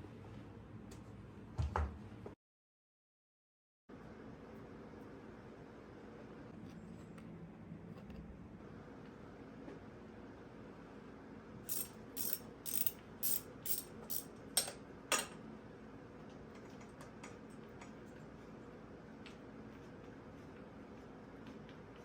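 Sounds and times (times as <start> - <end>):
ratchet clicking: 11.7 - 14.3.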